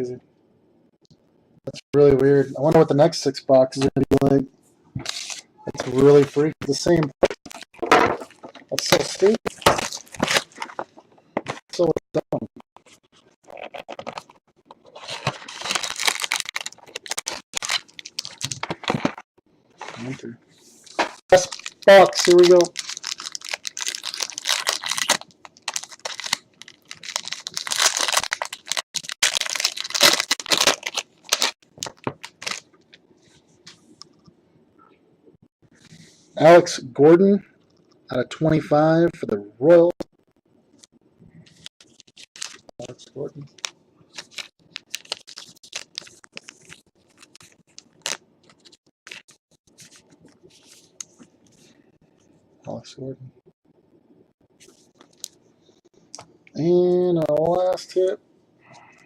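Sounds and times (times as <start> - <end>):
plastic wrapping crinkling and tearing: 7.5 - 11.0, 13.5 - 19.3, 21.0 - 32.7, 41.8 - 50.1.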